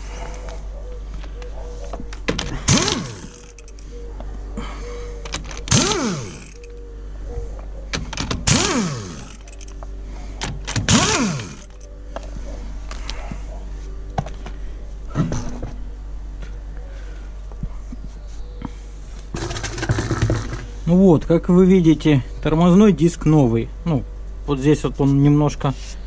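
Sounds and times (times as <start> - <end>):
power tool spinning bolts: 2.5 - 3.7, 5.3 - 6.7, 8.0 - 9.8, 10.6 - 11.8, 19.4 - 20.7.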